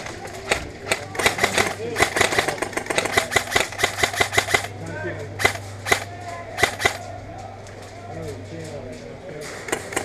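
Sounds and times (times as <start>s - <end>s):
airsoft gun shots: 0.9s - 4.7s, 5.4s - 7.0s.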